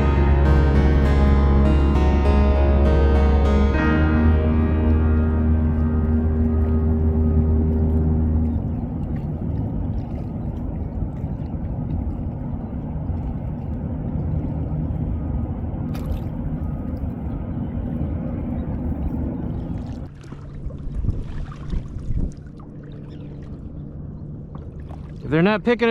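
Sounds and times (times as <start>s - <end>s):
water lapping around kayak: 0.0s - 25.9s
wind buffeting microphone: 5.2s - 25.0s.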